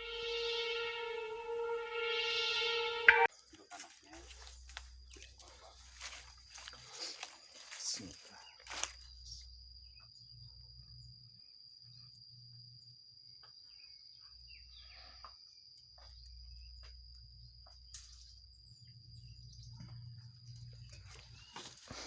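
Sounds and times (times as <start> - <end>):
high-pitched insect drone: 0.0 - 3.3
faint ticks and rustles: 3.4 - 10.2.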